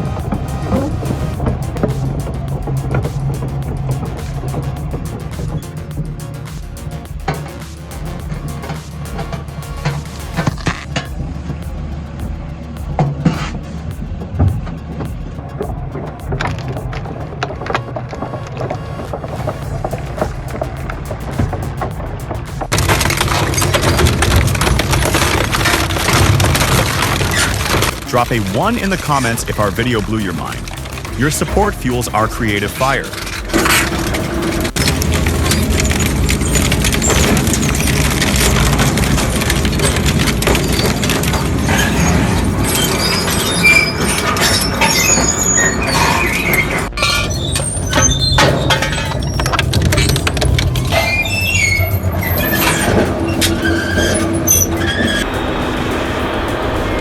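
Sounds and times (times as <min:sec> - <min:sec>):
machinery low rumble: 0:00.0 - 0:45.6, 0:46.6 - 0:57.0
material crunching and cracking: 0:16.3 - 0:31.5, 0:33.1 - 0:54.8
high-pitched metal squeals: 0:22.2 - 0:57.0
glass breaking: 0:32.8 - 0:55.2.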